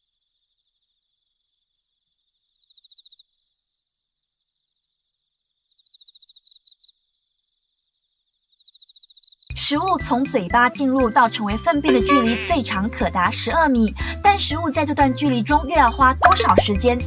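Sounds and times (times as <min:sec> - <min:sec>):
insect trilling: 0:05.8 - 0:09.5, 0:11.9 - 0:12.7.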